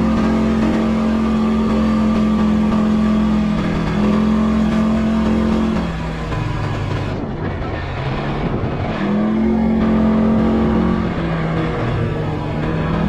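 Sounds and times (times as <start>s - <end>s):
atv engine running: 0.0s - 13.0s.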